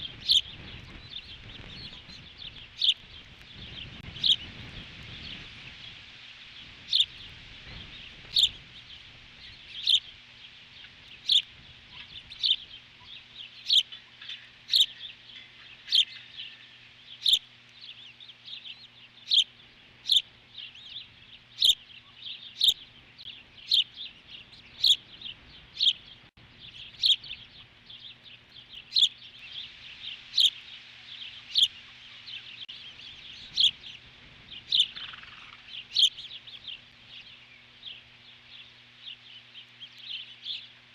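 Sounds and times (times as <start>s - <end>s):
osprey chirping: 0.0s - 40.8s
faint electrical hum: 0.0s - 40.9s.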